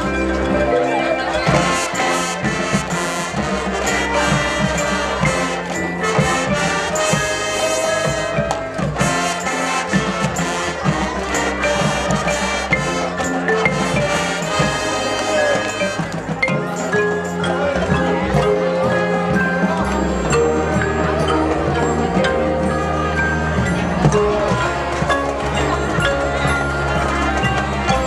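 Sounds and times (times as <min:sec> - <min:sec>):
marching band brass: 0:00.0 - 0:28.0
steady drum beat: 0:01.4 - 0:28.0.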